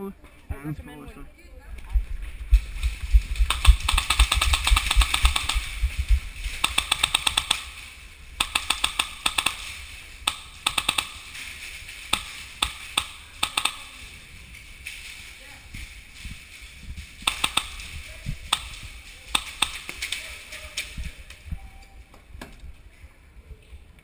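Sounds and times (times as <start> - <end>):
low microphone rumble: 0.4 - 6.6
airsoft rifle firing bursts: 3.4 - 11.5, 12.1 - 14.1, 17.2 - 20.0.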